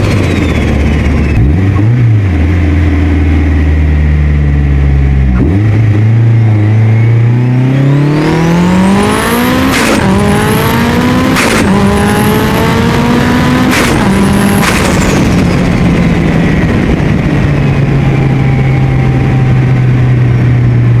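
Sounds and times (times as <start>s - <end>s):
car engine accelerating hard: 0.0s - 21.0s
compressor surge flutter: 9.7s - 20.8s.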